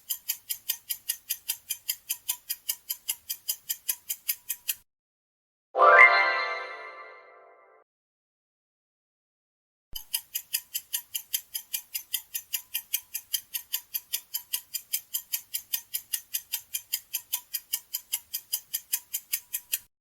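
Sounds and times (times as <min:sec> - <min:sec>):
fast clock ticking: 0:00.0 - 0:04.8, 0:10.0 - 0:19.9.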